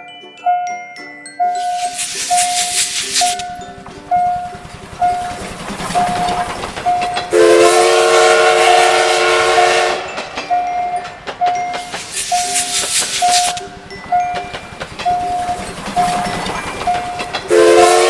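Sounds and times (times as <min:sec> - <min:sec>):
level crossing bell ringing: 0:00.0 - 0:18.0
passing train: 0:01.4 - 0:18.0
train horn chord: 0:07.3 - 0:10.3, 0:17.5 - 0:18.0.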